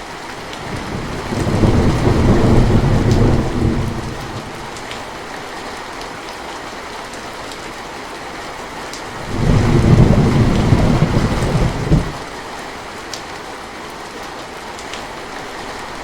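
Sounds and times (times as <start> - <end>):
steady rain falling: 0.0 - 16.0
thunder rumbling: 0.5 - 5.1, 9.2 - 12.3.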